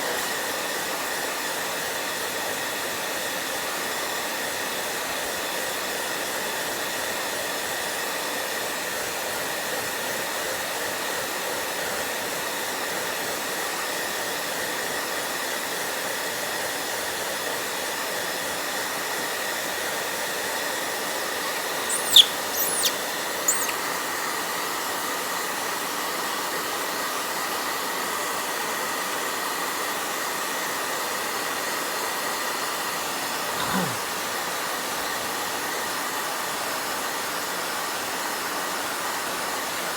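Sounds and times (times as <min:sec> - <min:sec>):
high-pitched squeaks: 0:21.9 - 0:23.8.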